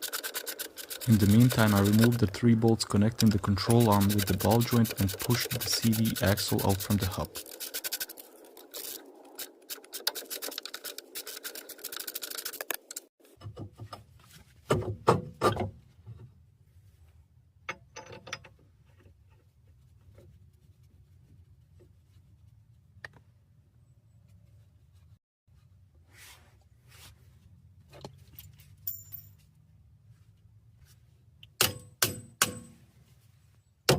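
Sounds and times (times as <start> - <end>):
tools scraping metal parts: 0.0 - 13.1.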